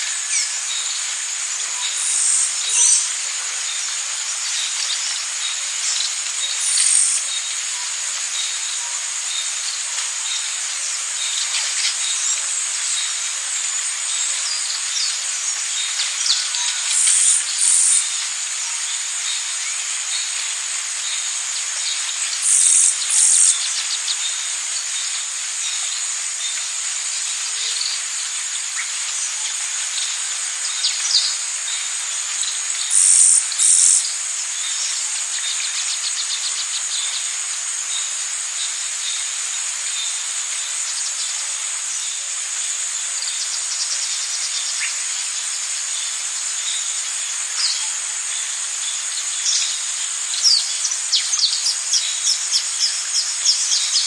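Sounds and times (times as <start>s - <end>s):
insect chorus drone: 0.0s - 54.0s
loud doubled buzzing calls: 1.7s - 3.3s, 4.2s - 7.4s, 11.4s - 24.2s, 30.0s - 34.5s, 49.4s - 54.0s
bird chirps: 6.6s - 7.2s, 16.0s - 18.0s, 22.4s - 23.6s, 32.9s - 34.0s.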